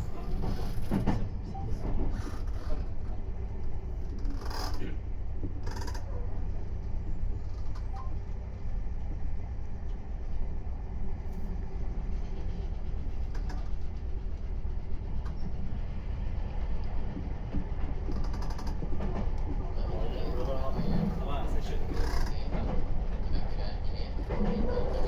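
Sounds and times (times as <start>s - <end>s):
electric train rumbling: 0.0s - 25.0s.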